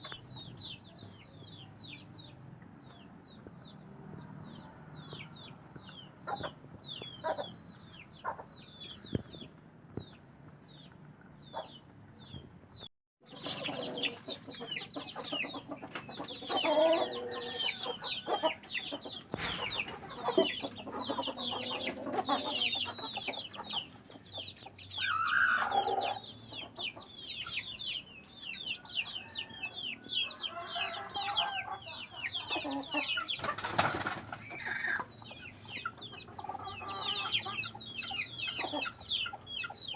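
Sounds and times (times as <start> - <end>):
chicks peeping: 0.0 - 39.9
hens clucking: 13.2 - 39.9.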